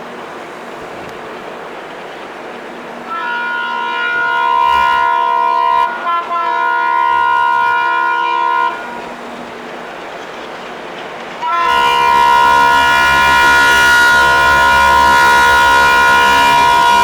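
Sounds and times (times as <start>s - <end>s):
steady rushing hiss: 0.0s - 17.0s
locomotive air horn chord: 3.0s - 9.6s, 11.4s - 17.0s.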